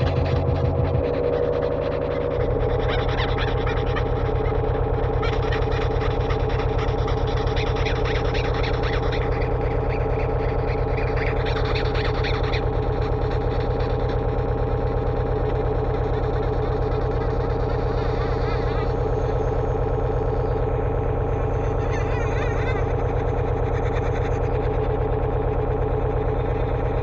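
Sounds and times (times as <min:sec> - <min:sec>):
chattering high synth texture: 0:00.0 - 0:13.8, 0:17.1 - 0:24.9
pulsing synthesizer drone: 0:00.0 - 0:27.0.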